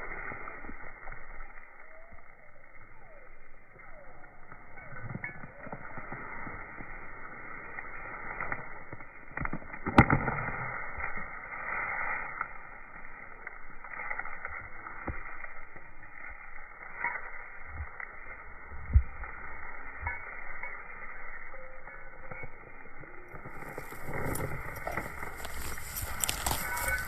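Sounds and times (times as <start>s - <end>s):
dog tearing and crunching roots: 23.9s - 27.0s.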